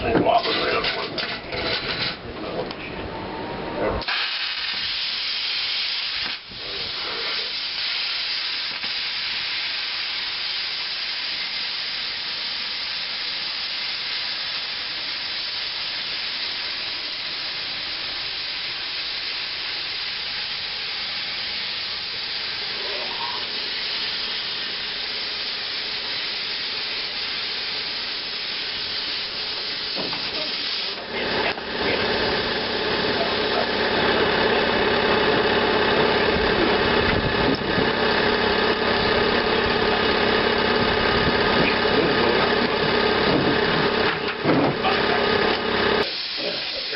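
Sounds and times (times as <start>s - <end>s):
plasma cutter hissing: 4.0s - 46.9s.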